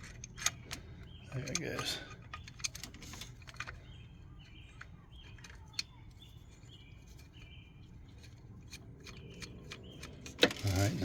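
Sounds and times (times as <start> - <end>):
faint bird chirps: 0.0 - 10.4
metal tools clicking and tapping: 0.0 - 10.7.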